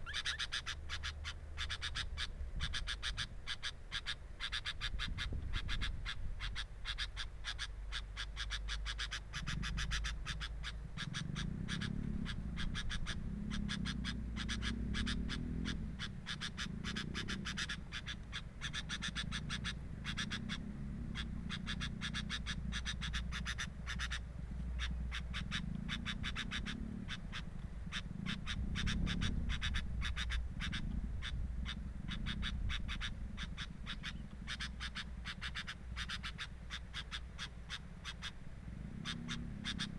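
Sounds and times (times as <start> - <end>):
clicking frog-like calls: 0.0 - 38.4, 39.0 - 39.9
low rumbles: 9.3 - 36.7.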